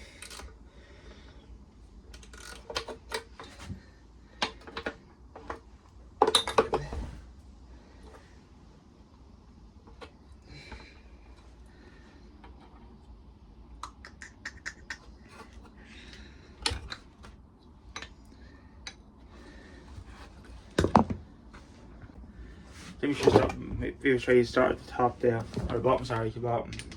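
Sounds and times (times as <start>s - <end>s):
hand ratchet clicking: 0.0s - 0.5s, 2.2s - 2.9s.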